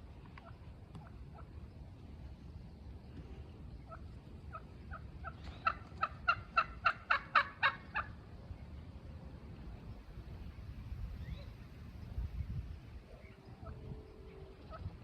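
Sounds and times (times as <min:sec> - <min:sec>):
wild turkey calling: 0:00.1 - 0:01.9, 0:03.1 - 0:08.4, 0:13.0 - 0:15.0.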